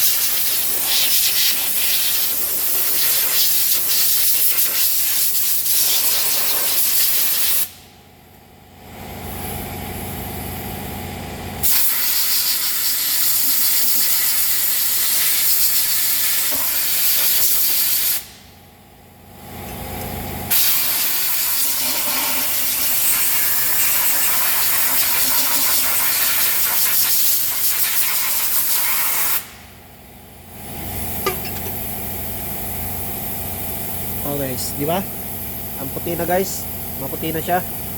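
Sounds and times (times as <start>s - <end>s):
high-pressure spray hissing: 11.7s - 18.2s, 20.5s - 29.4s.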